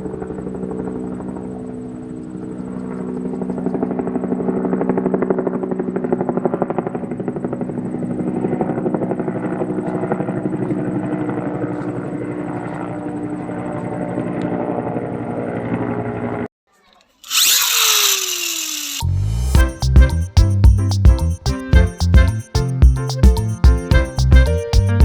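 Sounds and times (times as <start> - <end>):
toy vehicle motor whirring: 17.1 - 19.1.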